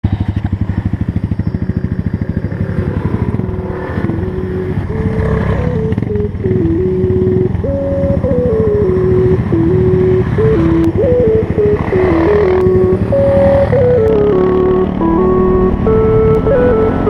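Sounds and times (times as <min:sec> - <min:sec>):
motorcycle engine idling: 0:00.0 - 0:17.0
music with stepping notes: 0:04.0 - 0:17.0.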